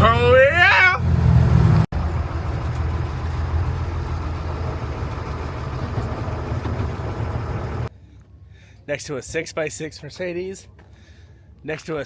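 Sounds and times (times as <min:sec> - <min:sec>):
diesel truck engine droning: 0:00.0 - 0:07.9.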